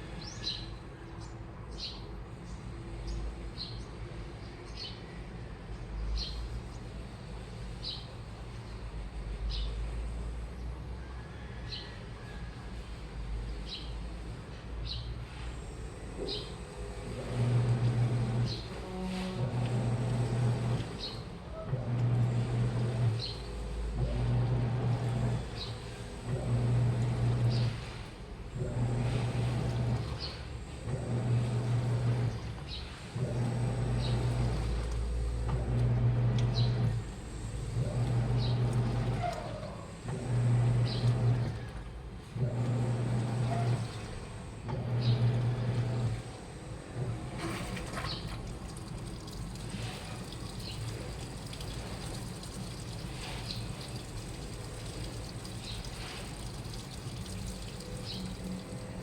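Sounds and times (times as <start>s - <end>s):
washing sloshing: 17.4s - 32.6s, 33.2s - 46.1s, 47.1s - 59.0s
washing machine drum turning: 47.0s - 59.0s.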